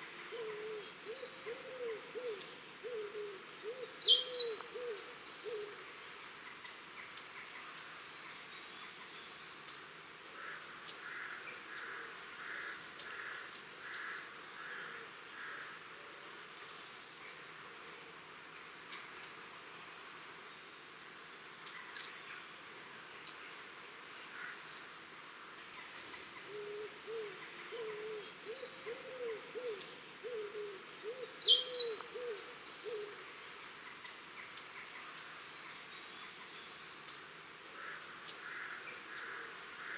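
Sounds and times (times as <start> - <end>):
high-pitched bird calls: 4.0 - 4.6, 31.0 - 32.2.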